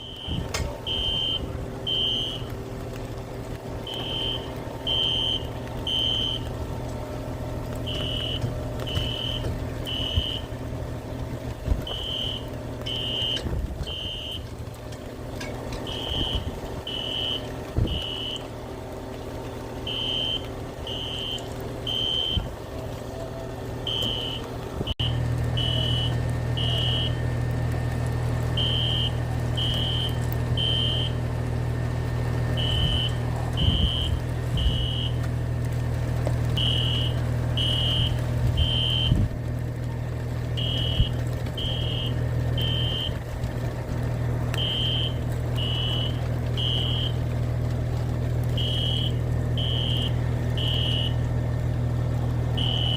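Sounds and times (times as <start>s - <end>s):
fire alarm beeping: 0.0s - 2.5s, 3.9s - 6.5s, 7.8s - 10.6s, 11.9s - 14.5s, 15.8s - 18.5s, 19.9s - 22.5s, 23.9s - 27.3s, 28.6s - 31.2s, 32.6s - 35.2s, 36.6s - 39.2s, 40.6s - 43.2s, 44.6s - 47.2s, 48.6s - 51.2s, 52.6s - 52.9s.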